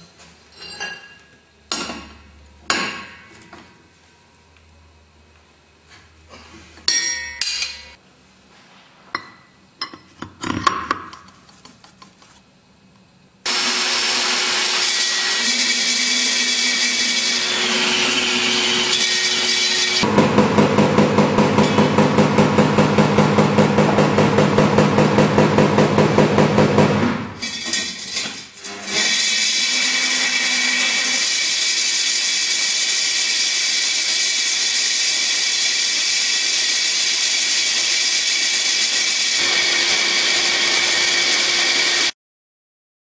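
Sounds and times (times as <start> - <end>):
electric concrete drill: 13.5 - 25.7, 26.8 - 42.2.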